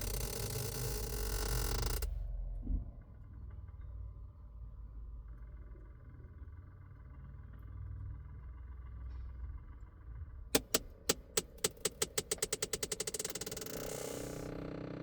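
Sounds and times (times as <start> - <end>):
rapid clicking in car: 0.0 - 2.2, 10.6 - 14.5.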